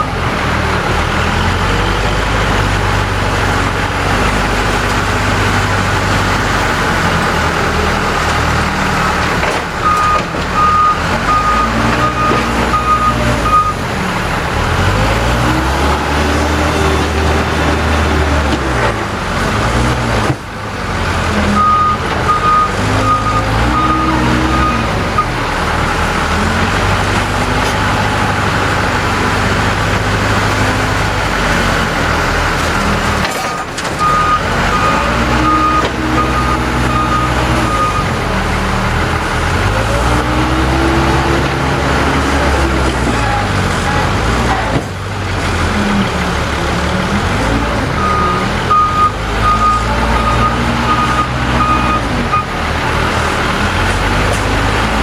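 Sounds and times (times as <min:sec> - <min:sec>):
diesel engine revving: 0:00.0 - 0:55.0
reverse alarm beeping: 0:09.8 - 0:13.8, 0:48.0 - 0:52.5.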